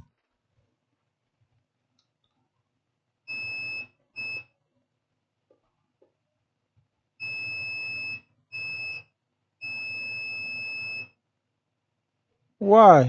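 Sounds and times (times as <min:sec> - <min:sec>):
multimeter continuity beeps: 0:03.3 - 0:04.5, 0:07.2 - 0:11.2.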